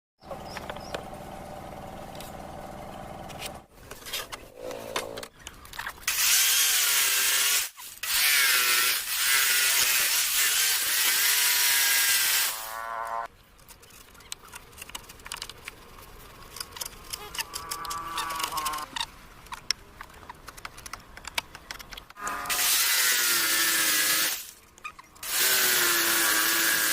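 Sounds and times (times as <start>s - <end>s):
power tool cutting wood: 6.1s - 13.3s, 22.2s - 24.5s, 25.2s - 26.9s.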